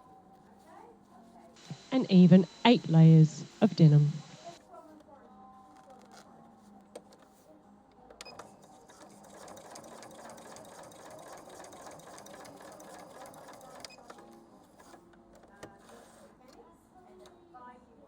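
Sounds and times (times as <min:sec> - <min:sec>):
sewing machine stitching: 0:08.3 - 0:14.2.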